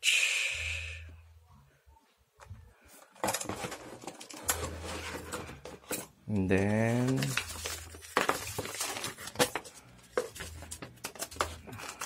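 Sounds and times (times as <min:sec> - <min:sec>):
packaging rustling and clicking: 0:03.1 - 0:12.0.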